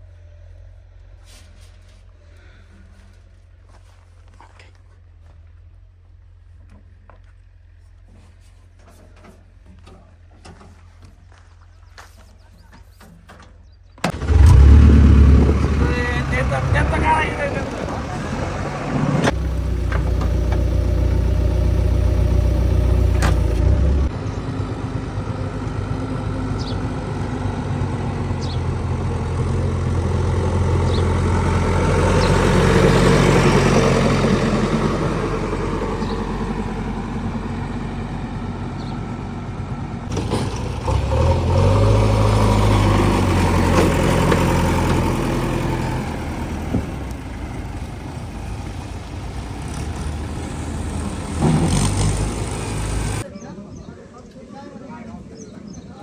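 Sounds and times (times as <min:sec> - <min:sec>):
heavy machinery diesel engine: 0:14.0 - 0:53.3.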